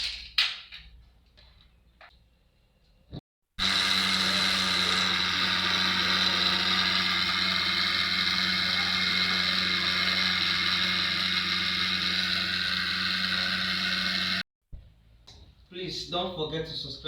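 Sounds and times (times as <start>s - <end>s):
fan whirring with low hum: 3.6s - 14.4s.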